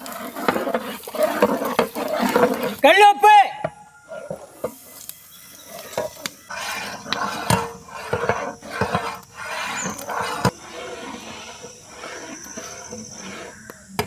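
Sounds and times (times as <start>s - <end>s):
ladle scraping metal pot: 0.0s - 2.8s, 5.7s - 13.7s.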